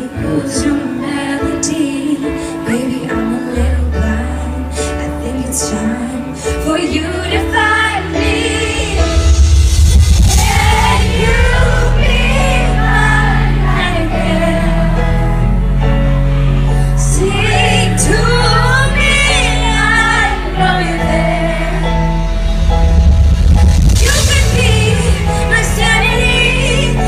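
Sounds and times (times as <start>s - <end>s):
woman singing pop ballad: 0.0s - 9.2s, 17.0s - 21.9s, 24.0s - 27.0s
band accompaniment with bass: 0.0s - 27.0s.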